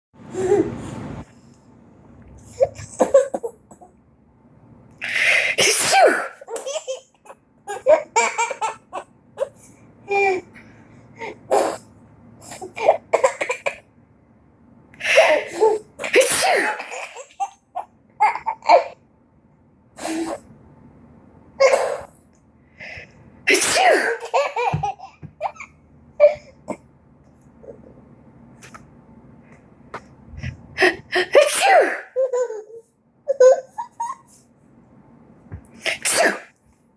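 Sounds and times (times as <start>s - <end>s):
person sneezing: 5.1s - 6.4s, 15.0s - 16.9s, 23.5s - 24.2s, 30.8s - 32.2s, 35.8s - 36.5s
baby laughing: 30.8s - 34.4s.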